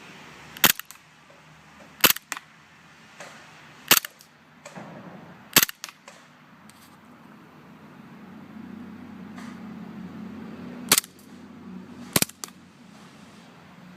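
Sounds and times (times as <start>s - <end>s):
pistol mechanism clicks: 0.6s - 1.1s, 2.0s - 2.5s, 3.9s - 4.8s, 5.5s - 6.3s, 10.9s - 11.3s, 12.2s - 12.6s
airsoft pistol shots popping: 3.9s - 6.3s.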